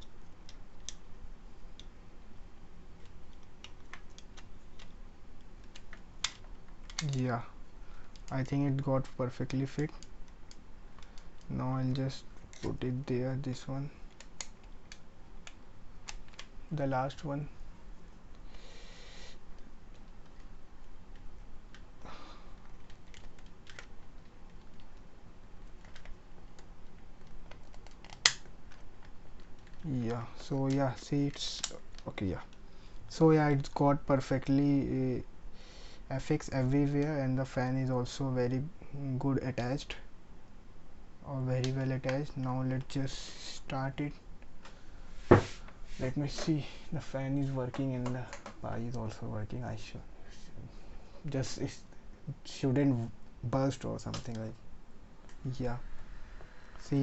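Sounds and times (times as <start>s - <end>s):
plastic parts clicking and tapping: 3.0s - 7.2s, 22.6s - 25.0s, 25.6s - 29.9s
sharp plastic click: 27.5s - 28.5s.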